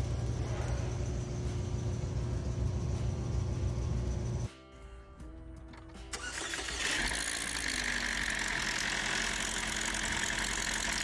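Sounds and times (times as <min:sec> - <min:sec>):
car engine starting and running: 0:06.1 - 0:11.0.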